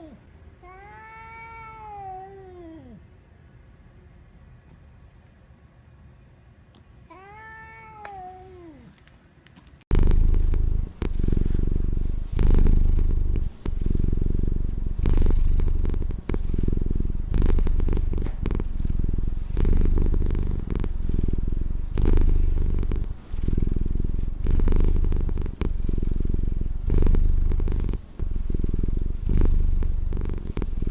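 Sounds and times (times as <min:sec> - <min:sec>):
cat purring: 0:09.9 - 0:30.9.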